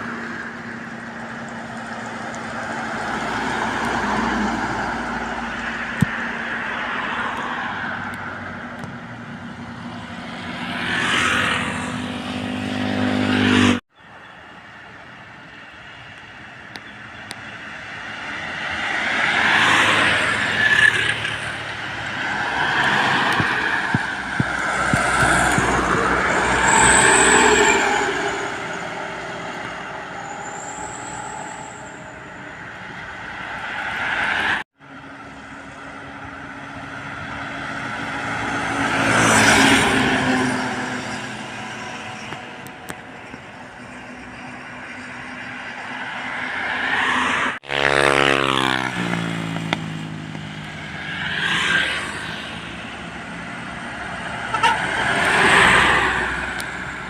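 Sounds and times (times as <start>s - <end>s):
heavy trucks passing: 0.0s - 57.0s
vehicles passing with tyre noise: 0.0s - 57.0s
high squeal-like tones: 22.9s - 34.0s.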